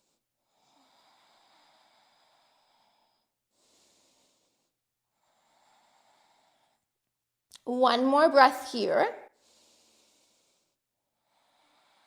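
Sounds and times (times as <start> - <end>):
faint breathing through nose: 0.0 - 6.9, 9.4 - 12.0.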